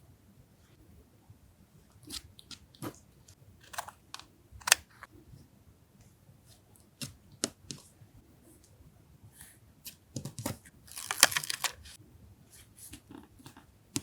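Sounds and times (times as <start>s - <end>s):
paper clicking and rustling: 10.4s - 12.0s.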